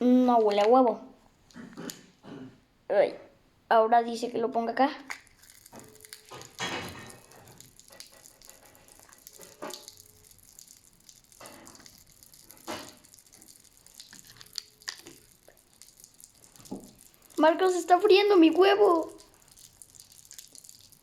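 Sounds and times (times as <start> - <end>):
popping candy crackling: 5.0 - 21.0.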